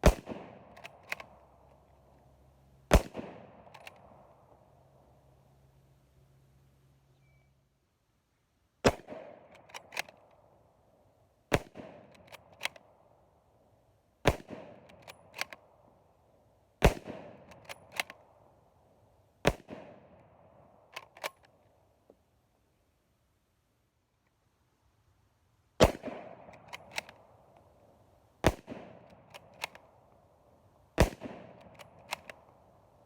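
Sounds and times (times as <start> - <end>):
rifle shots with echo: 0.0 - 1.4, 2.9 - 4.6, 8.8 - 10.3, 11.5 - 12.9, 14.2 - 15.7, 16.8 - 18.3, 19.4 - 21.3, 25.8 - 27.5, 28.4 - 30.0, 31.0 - 32.6
rifle bolt clicks: 0.7 - 1.9, 3.6 - 4.1, 9.0 - 10.4, 11.7 - 12.9, 14.7 - 15.7, 17.4 - 18.3, 20.9 - 21.6, 25.9 - 27.7, 28.5 - 30.2, 31.0 - 32.6.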